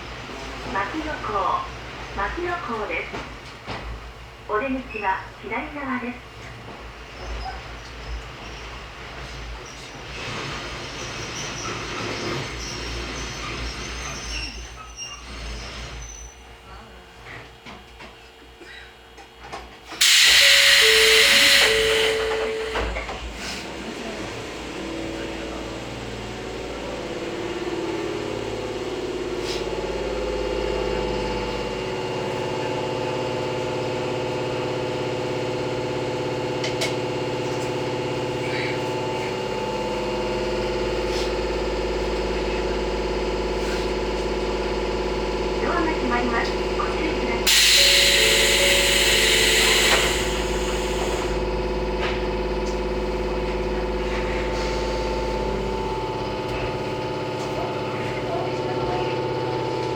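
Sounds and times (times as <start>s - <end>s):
electric train hum: 0.0s - 14.0s, 19.2s - 59.9s
air hiss: 20.0s - 22.8s, 47.5s - 51.4s
train doors closing thump: 20.0s - 23.3s, 47.5s - 51.3s.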